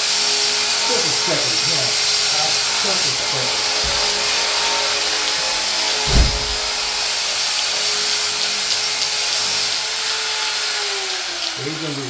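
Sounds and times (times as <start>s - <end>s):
grinder on metal whining: 0.0s - 12.0s
dull thump: 3.7s - 7.1s.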